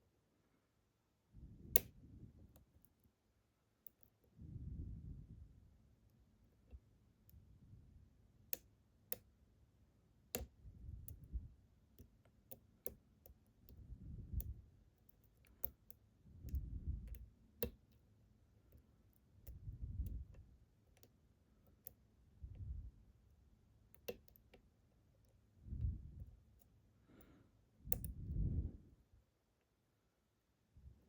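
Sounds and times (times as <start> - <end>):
lock pick metallic clicks: 27.9 - 28.2.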